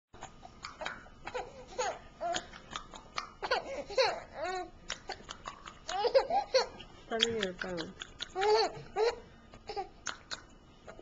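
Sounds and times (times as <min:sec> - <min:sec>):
baby giggling: 0:00.2 - 0:06.9, 0:07.8 - 0:09.9.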